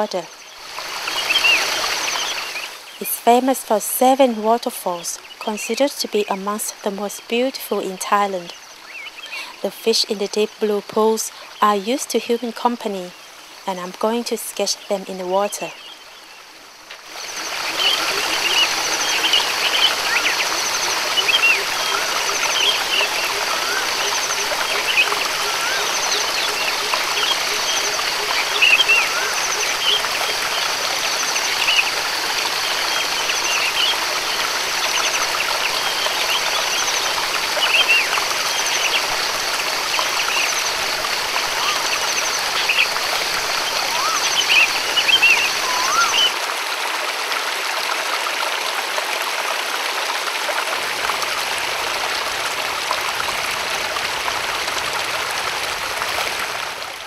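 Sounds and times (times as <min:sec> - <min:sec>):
rushing water: 0:00.0 - 0:57.0
birds chirping: 0:05.1 - 0:14.0, 0:39.9 - 0:46.3.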